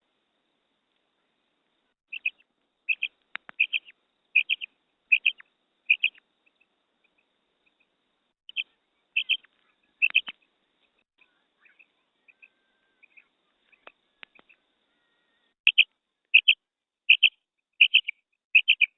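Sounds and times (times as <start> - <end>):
quail calling: 2.1 - 6.2, 8.5 - 10.4, 11.6 - 18.9
sharp clicks: 2.9 - 3.9, 9.2 - 10.4.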